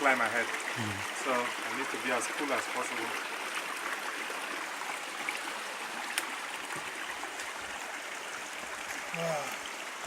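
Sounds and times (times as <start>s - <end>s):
spring water running: 0.0s - 10.0s.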